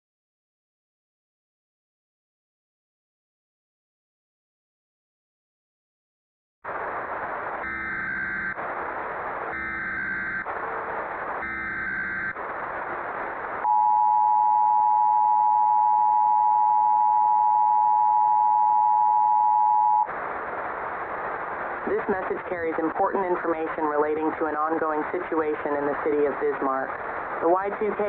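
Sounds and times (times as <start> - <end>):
static hiss: 6.7 - 13.8, 19.9 - 28.0
data tone bursts: 7.6 - 8.6, 9.5 - 10.5, 11.4 - 12.4
two-tone attention signal: 7.6 - 8.6, 11.4 - 12.3.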